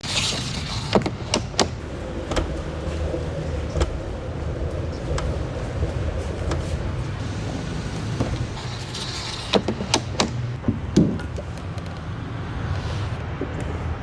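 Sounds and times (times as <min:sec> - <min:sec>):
heavy bass rumble from speaker: 0:01.8 - 0:08.6.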